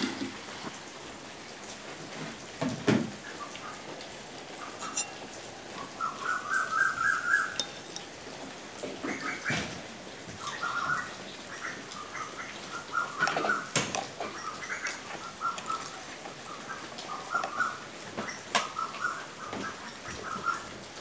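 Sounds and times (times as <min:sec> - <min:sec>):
steady rain: 0:00.0 - 0:21.0
bird chirping: 0:10.4 - 0:20.6.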